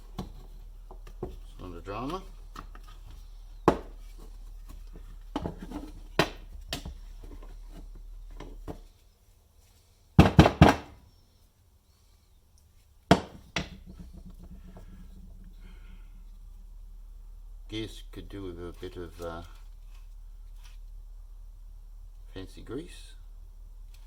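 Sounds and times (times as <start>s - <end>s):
plastic parts clicking and knocking: 0.0s - 8.9s, 13.1s - 15.6s.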